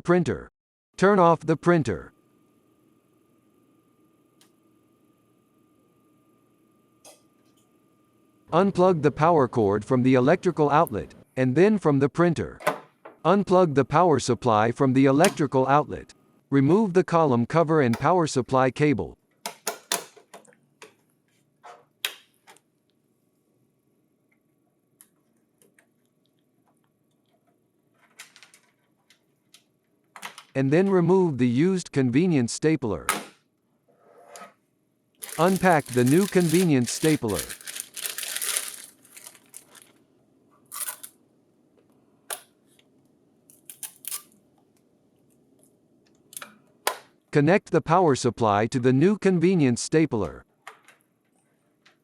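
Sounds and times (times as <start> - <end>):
packaging rustling: 35.2 - 40.0, 40.7 - 41.1.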